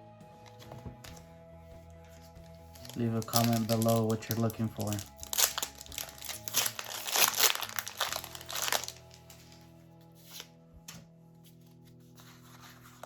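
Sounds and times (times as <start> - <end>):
background music: 0.0 - 13.0
foil wrapper crinkling: 2.7 - 9.7.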